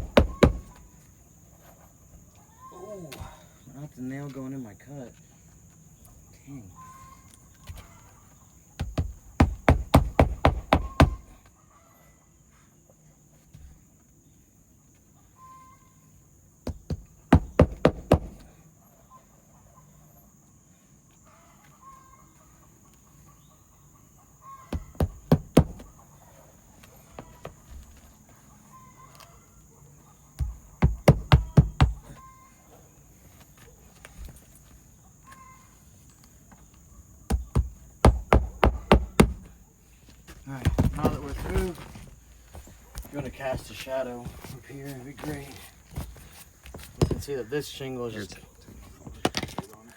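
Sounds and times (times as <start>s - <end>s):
hammer striking roofing nails: 0.0s - 0.9s, 8.8s - 11.4s, 16.6s - 18.5s, 24.7s - 25.9s, 30.4s - 32.2s, 37.3s - 39.6s, 40.6s - 41.7s.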